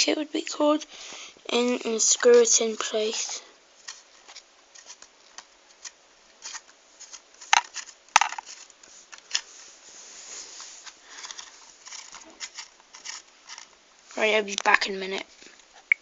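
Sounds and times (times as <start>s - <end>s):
soft rustle: 5.7s - 15.9s.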